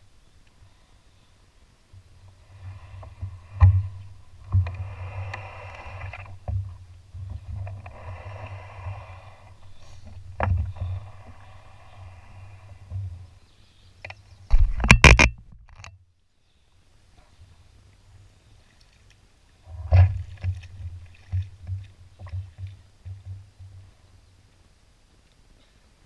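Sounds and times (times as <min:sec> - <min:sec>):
paddle swishing through water: 0:02.0 - 0:13.7, 0:18.4 - 0:24.1
paddle knocking on canoe hull: 0:19.9 - 0:23.9.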